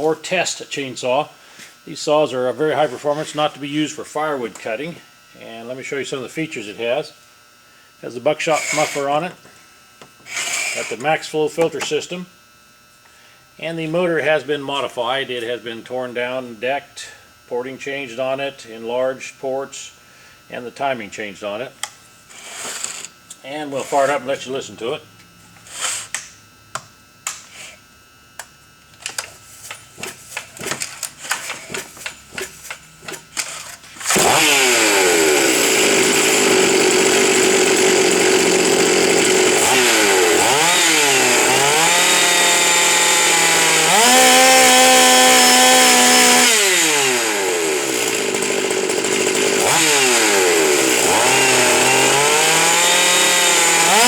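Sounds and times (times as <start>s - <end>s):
chainsaw revving: 8.4s - 9.2s, 10.3s - 11.1s, 29.8s - 54.0s.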